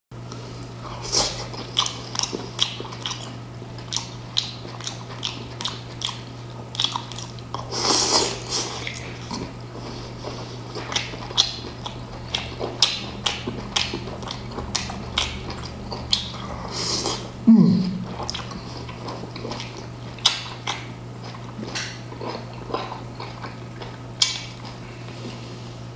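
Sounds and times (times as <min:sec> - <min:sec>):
low steady hum: 0:00.2 - 0:25.9
chewing and biting: 0:00.9 - 0:17.2, 0:18.1 - 0:25.4
slurping: 0:06.8 - 0:11.3, 0:16.2 - 0:17.3.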